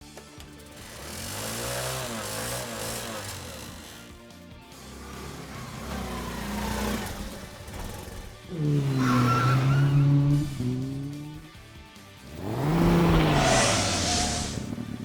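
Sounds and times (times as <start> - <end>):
car engine rumble: 4.8 - 15.0
tyre squeal: 5.5 - 11.5.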